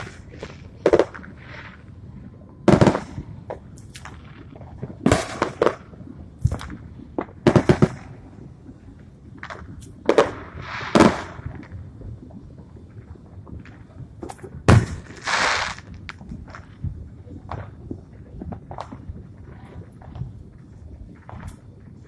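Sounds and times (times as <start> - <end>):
fireworks bangs: 0.0 - 1.9, 2.6 - 8.3, 9.4 - 11.8, 13.6 - 16.7
firework hiss: 9.4 - 11.6, 14.2 - 16.6.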